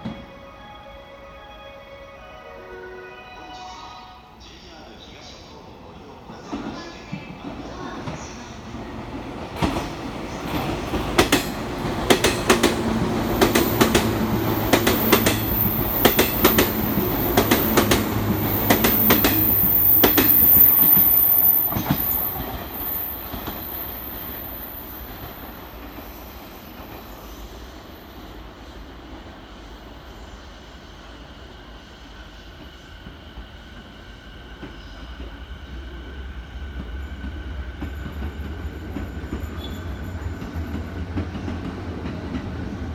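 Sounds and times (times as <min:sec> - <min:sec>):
train wheels clattering: 0:09.5 - 0:24.4
high squeal of train wheels: 0:13.3 - 0:41.7.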